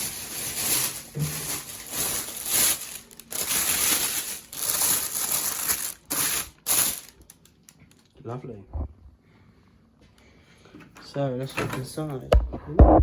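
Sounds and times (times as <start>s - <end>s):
packaging crinkling and rustling: 0.0s - 8.1s.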